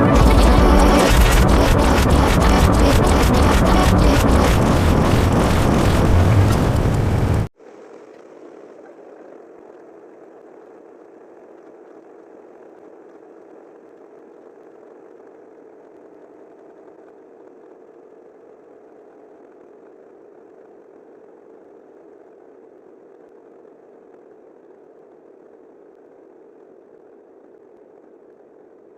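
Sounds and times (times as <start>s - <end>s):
steady low rumbling: 0.0s - 7.5s.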